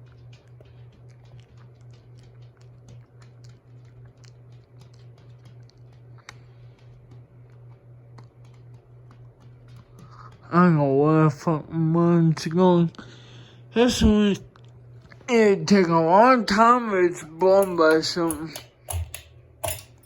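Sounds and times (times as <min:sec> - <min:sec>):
ceiling fans pulsing hum: 0:00.0 - 0:20.0
light ticking and clicking: 0:17.4 - 0:20.0.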